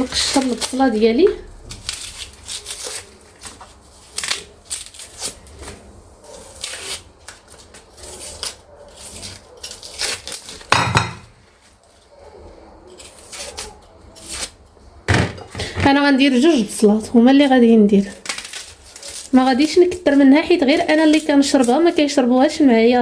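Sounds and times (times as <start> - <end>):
onion skin crackling and tearing: 0.0 - 10.8, 11.4 - 15.0
knock: 10.8 - 11.2, 15.1 - 15.6.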